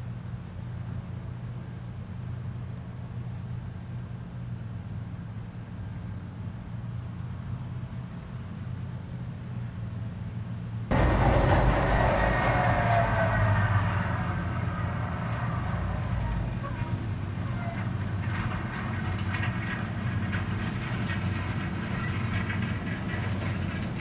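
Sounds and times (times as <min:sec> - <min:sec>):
harvest machinery drone: 0:10.9 - 0:21.1
machine rattle and whine: 0:10.9 - 0:24.0.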